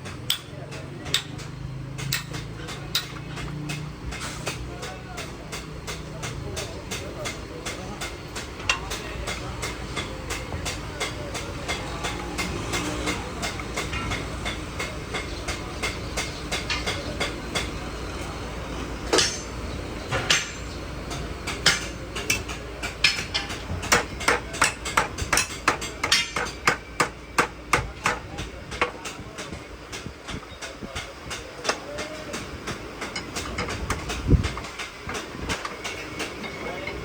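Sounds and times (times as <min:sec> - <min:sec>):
hammer blows on metal: 0:00.1 - 0:37.0.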